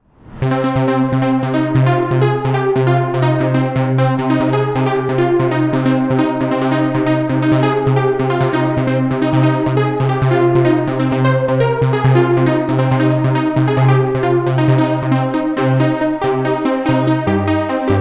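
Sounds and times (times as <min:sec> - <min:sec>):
synthesizer chord stabs: 0:00.4 - 0:18.0
low synth bass note: 0:16.8 - 0:18.0.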